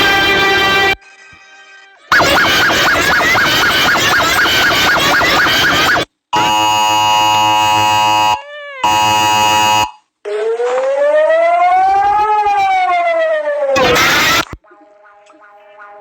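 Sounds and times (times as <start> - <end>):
harsh multi-tone alarm: 0.0 - 1.0, 2.1 - 12.8, 13.8 - 14.6
siren wail: 0.0 - 1.0, 2.1 - 14.6
warbling tone: 2.1 - 6.1.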